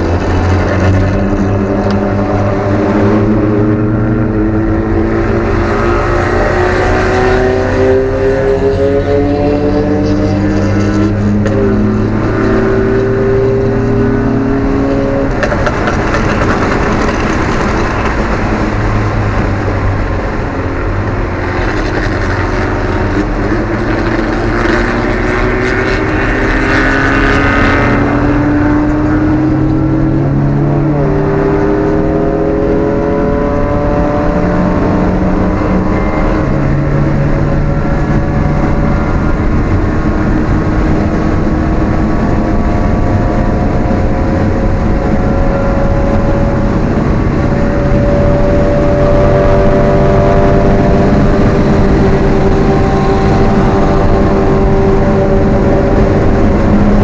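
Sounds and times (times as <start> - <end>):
car engine at speed: 0.0 - 57.0.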